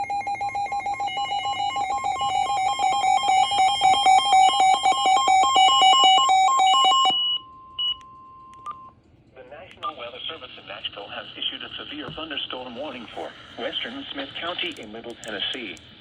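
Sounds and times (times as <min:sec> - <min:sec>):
warbling alarm beeps: 0:00.0 - 0:08.9.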